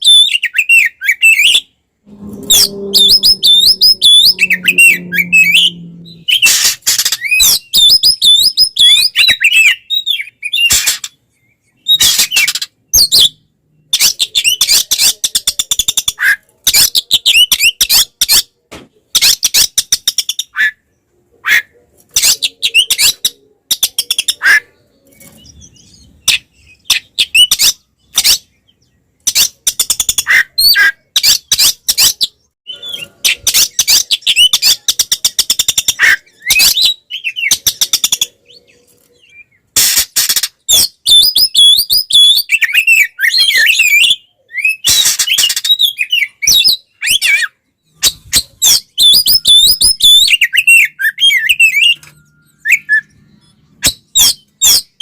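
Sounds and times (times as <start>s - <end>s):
bird harsh chattering song: 0.0s - 55.0s
bird swooping whistled notes: 2.1s - 7.4s.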